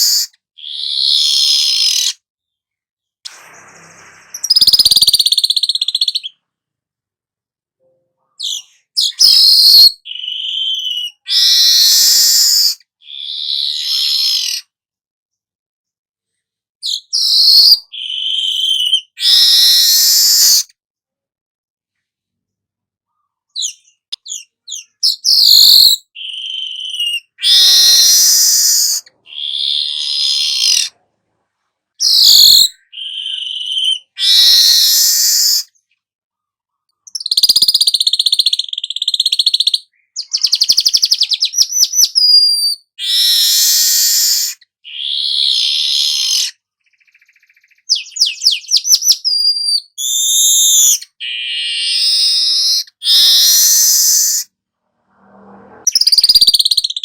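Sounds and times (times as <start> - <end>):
weaver bird singing: 3.3 - 6.4, 8.3 - 14.6, 16.8 - 20.6, 23.1 - 30.9, 32.0 - 35.9, 37.0 - 54.4, 55.9 - 57.0.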